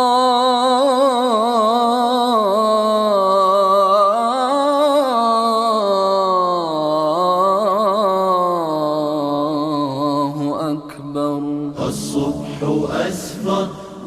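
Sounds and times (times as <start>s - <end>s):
person singing ornamented melody: 7.2s - 14.0s.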